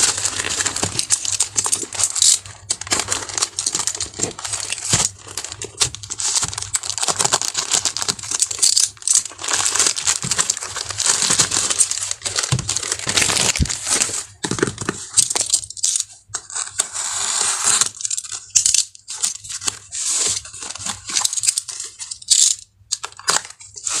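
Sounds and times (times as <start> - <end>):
packaging crinkling and tearing: 0.0 - 24.0.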